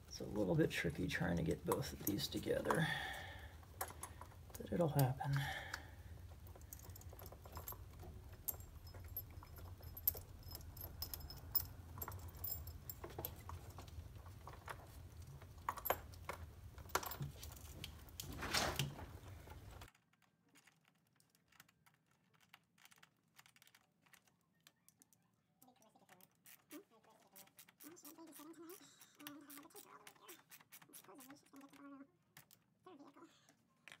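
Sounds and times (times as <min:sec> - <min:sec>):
small metallic clicks and clinks: 0:01.4 - 0:18.3.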